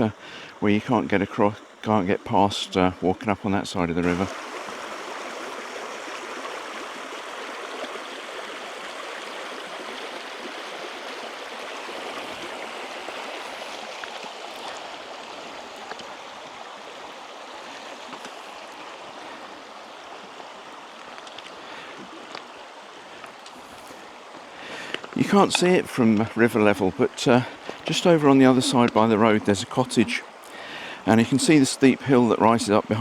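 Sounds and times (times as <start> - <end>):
river rushing over rocks: 4.0 - 33.0
faint clicks: 24.7 - 26.3.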